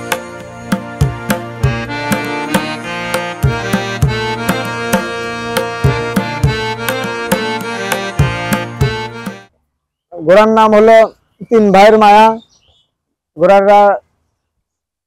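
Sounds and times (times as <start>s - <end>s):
melodic instrumental music: 0.0s - 9.5s.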